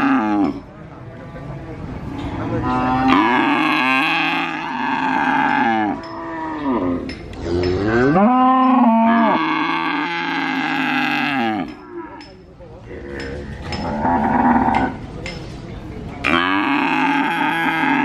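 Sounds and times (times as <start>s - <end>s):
calf mooing: 2.5s - 12.2s, 16.2s - 18.0s.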